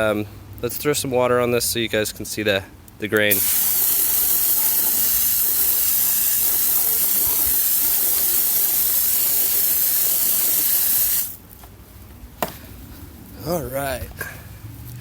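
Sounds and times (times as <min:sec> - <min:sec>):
water spray hissing on wood: 0:03.3 - 0:11.4.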